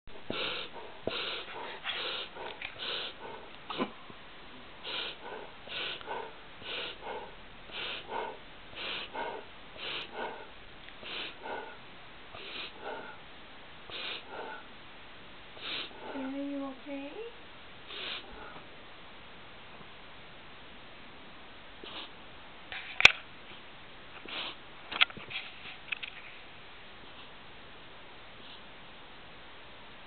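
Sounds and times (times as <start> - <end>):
dog reverse sneezing: 0.3 - 4.0, 4.8 - 11.7, 12.4 - 13.1, 13.9 - 14.6, 15.6 - 16.0, 17.9 - 18.6, 21.8 - 22.2, 24.2 - 24.6.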